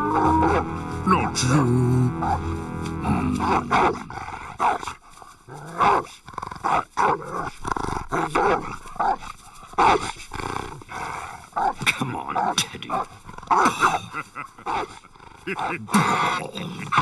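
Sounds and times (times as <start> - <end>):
cartoon dog barking and growling: 0.0 - 4.8.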